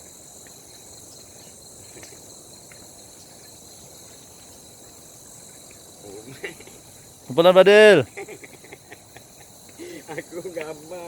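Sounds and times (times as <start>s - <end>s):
insects buzzing: 0.0s - 11.0s
faint ticks: 9.4s - 9.8s, 10.5s - 10.8s.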